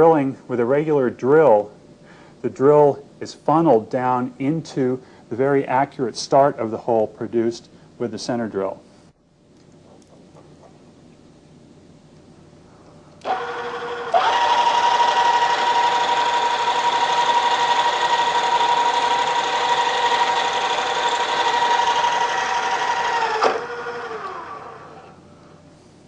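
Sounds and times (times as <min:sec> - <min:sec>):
drill cutting through workpiece: 0:13.2 - 0:25.1
drill press motor whining: 0:13.2 - 0:25.2.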